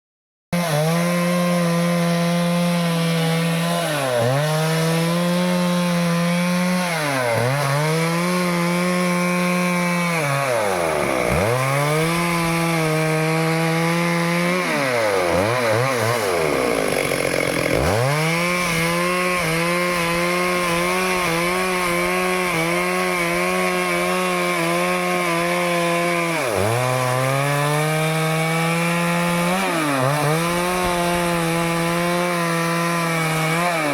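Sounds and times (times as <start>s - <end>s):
chainsaw cutting wood: 0.5s - 33.9s.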